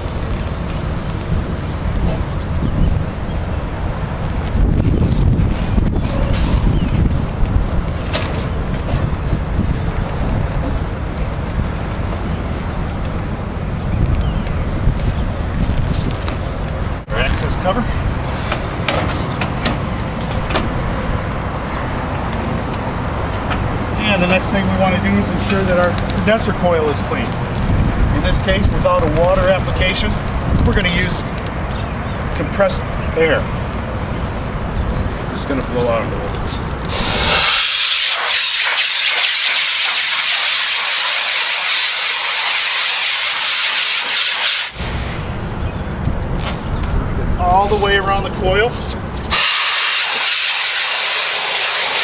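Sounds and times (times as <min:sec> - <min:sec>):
compressed air blowgun hissing: 0:36.9 - 0:44.9, 0:49.2 - 0:52.0
low machinery rumble: 0:44.8 - 0:49.4.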